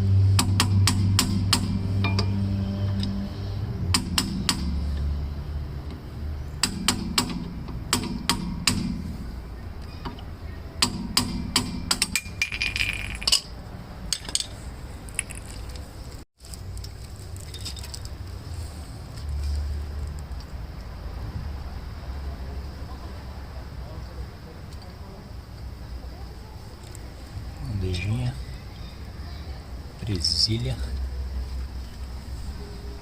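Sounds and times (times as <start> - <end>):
metal tools clinking: 12.2 - 15.9.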